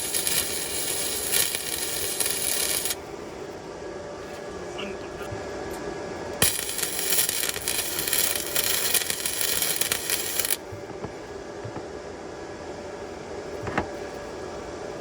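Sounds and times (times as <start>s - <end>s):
welding arc crackling: 0.0s - 3.0s, 6.4s - 10.7s.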